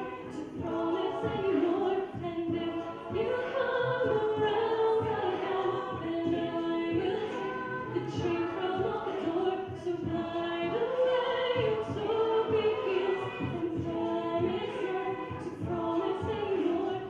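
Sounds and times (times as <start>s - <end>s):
vocal group singing harmony: 0.0s - 17.0s.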